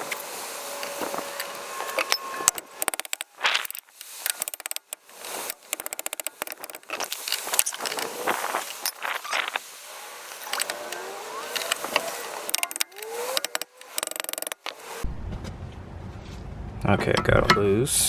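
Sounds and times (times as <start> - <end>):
metal hand tools clanking: 0.0 - 9.6, 10.3 - 15.0
rapid clicks: 0.0 - 9.6, 10.3 - 15.0.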